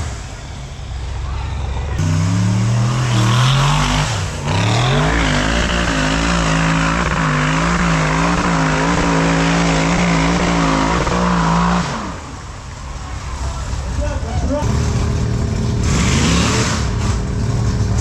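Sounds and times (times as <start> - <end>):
engine revving at full throttle: 2.0 - 12.3, 15.8 - 17.2.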